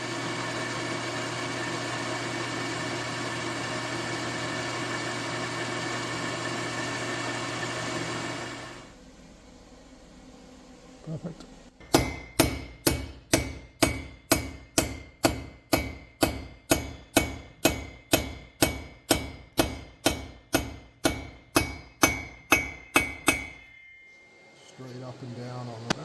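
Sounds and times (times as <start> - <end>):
hammer blows on metal: 11.8 - 24.6.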